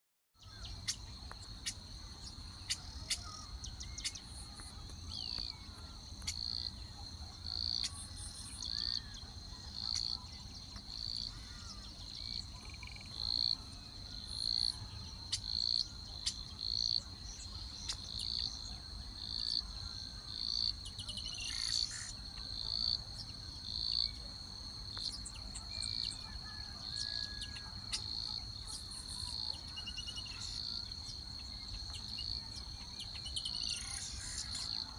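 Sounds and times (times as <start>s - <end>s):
faint bird calls: 0.4s - 18.8s, 25.0s - 31.1s
crickets trilling: 0.4s - 34.9s.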